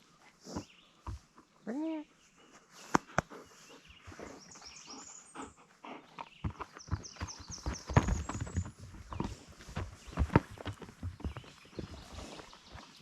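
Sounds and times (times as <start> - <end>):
footsteps on woodland ground: 2.2 - 13.0
dog paws scuffing and crunching: 6.5 - 13.0.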